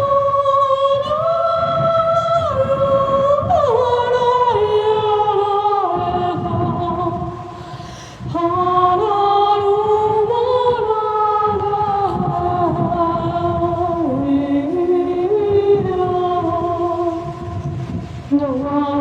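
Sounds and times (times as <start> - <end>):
wordless choral singing: 0.0 - 7.5.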